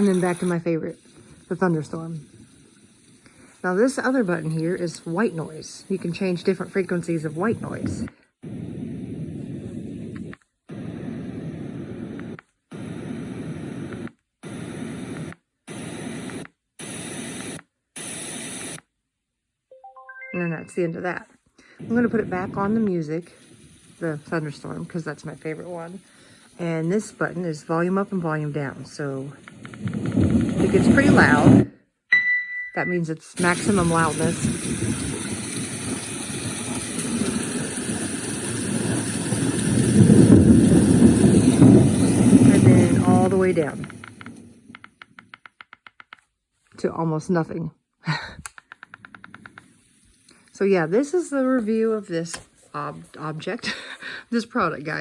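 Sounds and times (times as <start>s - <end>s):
white noise machine hiss: 0.0s - 18.8s, 32.8s - 44.7s
steady rain noise: 29.3s - 31.3s, 33.4s - 44.8s
deep thunder rumble: 34.4s - 43.9s.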